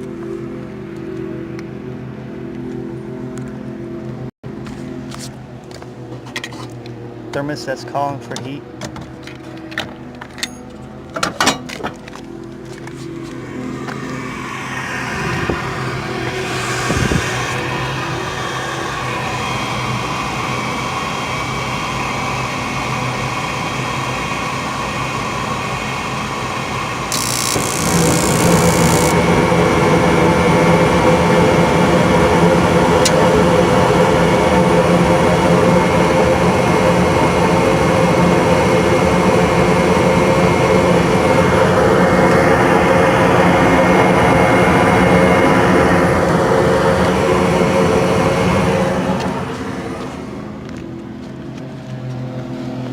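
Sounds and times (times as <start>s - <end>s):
furnace motor hum: 12.1s - 51.3s.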